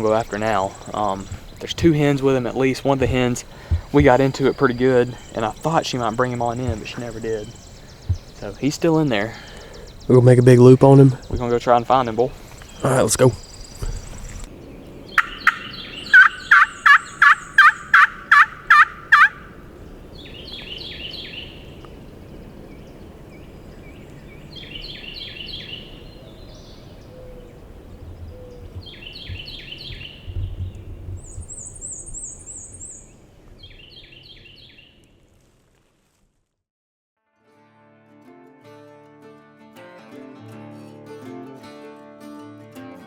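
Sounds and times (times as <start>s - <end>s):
small bird trilling: 15.1s - 19.5s
turkey gobbling: 15.2s - 19.6s
turkey yelping: 15.2s - 19.6s.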